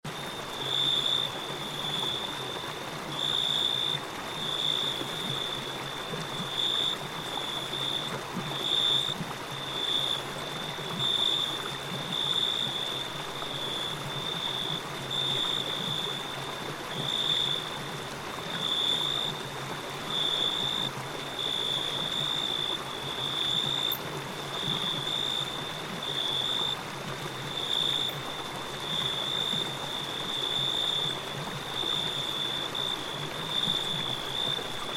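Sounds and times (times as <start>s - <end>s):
stream-like watery hiss: 0.0s - 34.9s.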